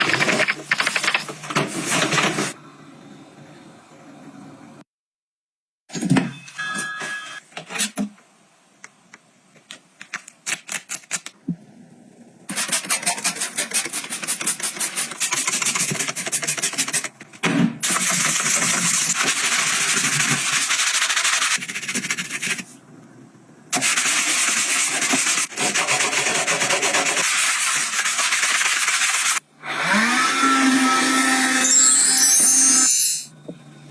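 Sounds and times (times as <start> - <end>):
rapid rasping scrubbing: 12.5 - 17.1, 17.8 - 22.7, 23.8 - 29.4.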